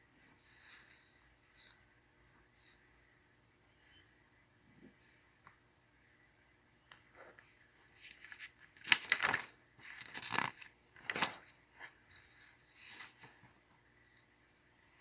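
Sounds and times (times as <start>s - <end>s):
paper pages rustling: 0.5s - 1.8s, 7.4s - 14.3s.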